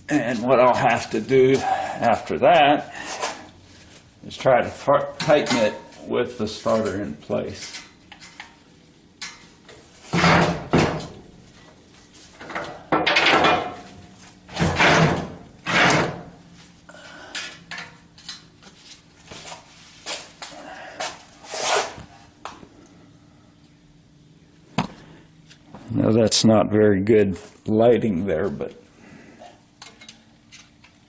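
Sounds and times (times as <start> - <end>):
loud metal thunks: 10.1 - 11.2.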